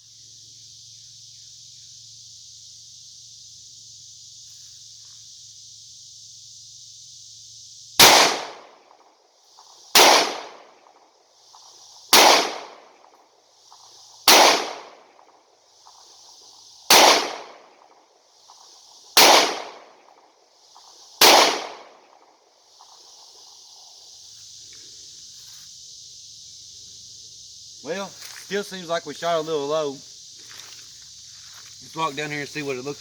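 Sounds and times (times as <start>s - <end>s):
pistol shots: 8.0s - 8.8s, 10.0s - 10.7s, 12.1s - 12.8s, 14.3s - 15.0s, 16.9s - 17.7s, 19.2s - 20.0s, 21.2s - 22.0s.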